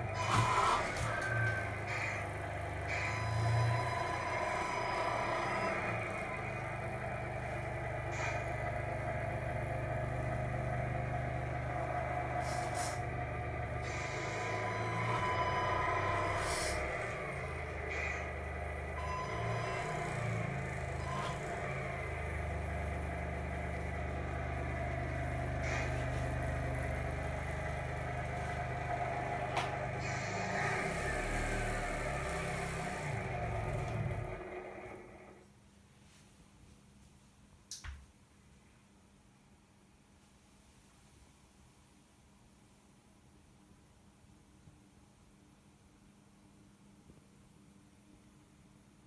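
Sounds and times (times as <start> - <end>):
toy truck motor drone: 0.0 - 35.4
faint motor whine: 0.0 - 37.2.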